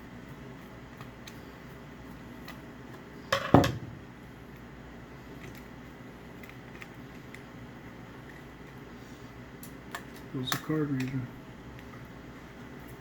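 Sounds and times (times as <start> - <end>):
tool clattering on tabletop: 3.3 - 4.0
small clicks of parts handled: 9.6 - 12.0.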